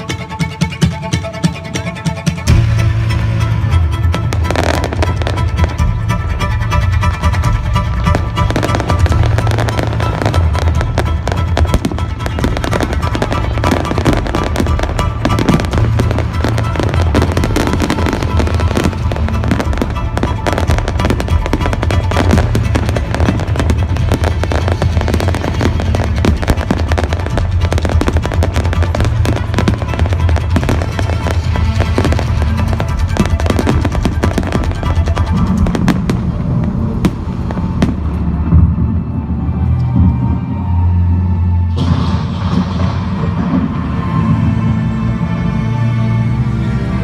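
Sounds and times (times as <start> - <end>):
fireworks bangs and crackles: 4.0 - 5.9, 8.0 - 39.0, 41.7 - 44.5.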